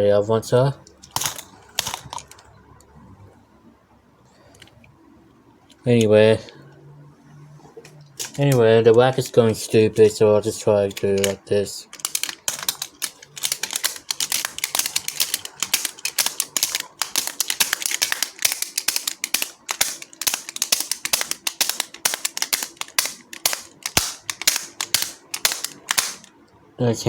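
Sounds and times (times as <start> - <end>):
plastic remote control clicking: 10.9 - 26.3.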